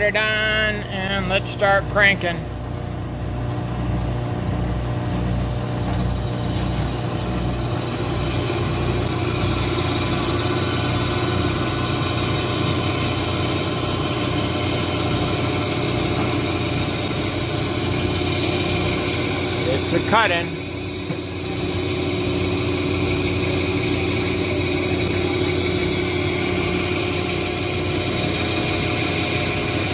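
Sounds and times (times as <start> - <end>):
saw motor hum: 0.0 - 29.9
saw blade grinding stone: 6.1 - 29.9.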